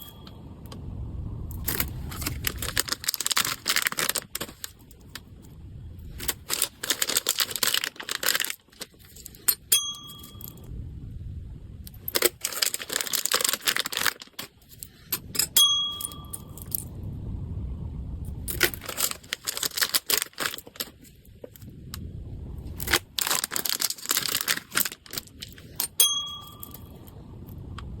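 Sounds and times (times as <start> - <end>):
packaging crinkling and tearing: 1.6 - 5.2, 6.1 - 9.5, 11.9 - 15.0, 18.5 - 21.7, 22.7 - 25.9
bright metallic ding: 9.7 - 10.7, 15.5 - 16.7, 26.0 - 27.0.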